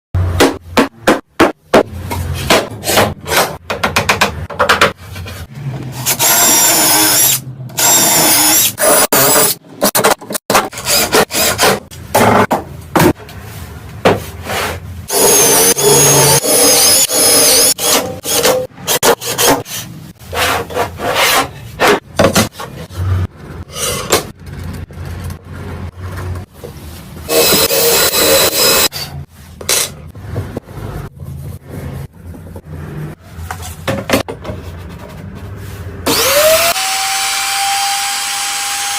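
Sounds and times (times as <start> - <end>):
power tool running: 36.1 - 38.9.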